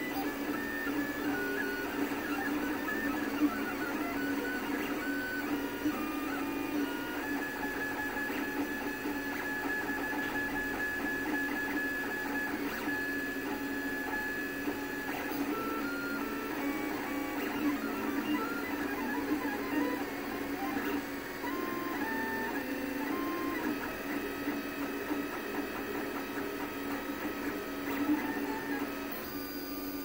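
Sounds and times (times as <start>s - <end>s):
printer stepper motors whining: 0.0s - 30.0s.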